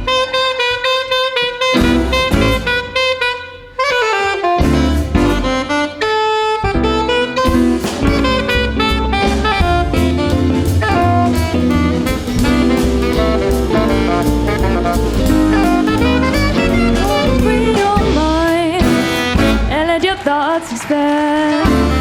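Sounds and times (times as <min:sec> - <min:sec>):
bass: 0:00.0 - 0:20.4, 0:21.6 - 0:22.0
drum kit: 0:00.0 - 0:22.0
piano: 0:00.0 - 0:22.0
saxophone: 0:00.0 - 0:22.0
guitar comping: 0:06.6 - 0:20.0.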